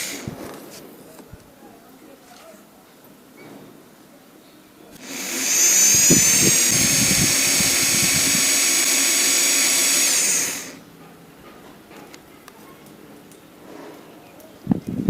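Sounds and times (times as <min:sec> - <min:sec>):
electric drill whining: 0:00.0 - 0:00.4, 0:05.0 - 0:10.8.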